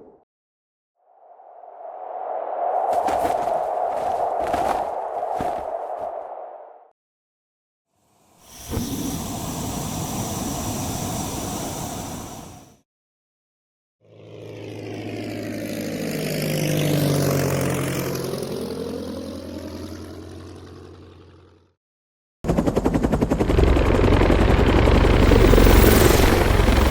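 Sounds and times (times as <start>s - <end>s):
propeller aircraft flying past: 14.1s - 21.6s, 23.2s - 26.9s
rapidly pulsing engine: 14.1s - 21.6s, 22.5s - 26.9s.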